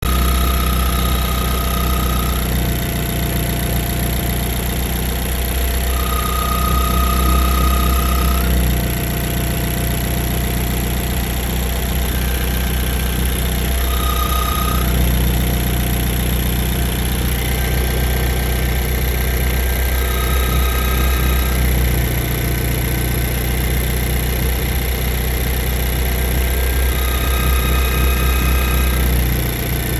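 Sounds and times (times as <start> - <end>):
car engine idling: 0.0 - 29.9
thin high whistle: 5.7 - 23.2, 26.0 - 29.9.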